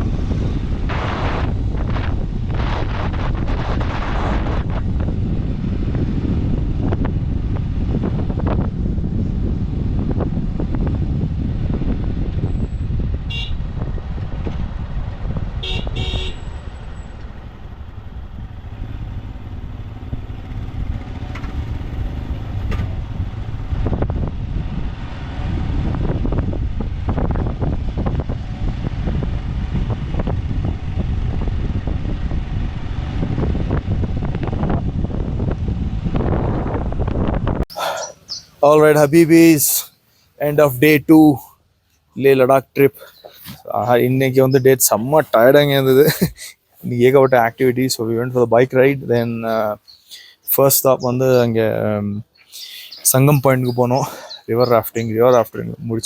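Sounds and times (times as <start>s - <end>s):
wind rumble on microphone: 0.0s - 41.6s, 42.3s - 56.0s
motorcycle riding: 0.0s - 56.0s
vehicle horn toots: 13.2s - 13.6s, 15.6s - 16.6s.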